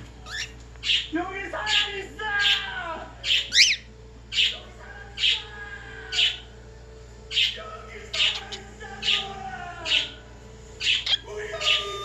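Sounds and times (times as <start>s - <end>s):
faint television soundtrack: 0.0s - 12.0s
bird chirping: 0.2s - 2.6s, 3.2s - 5.5s, 7.3s - 12.0s.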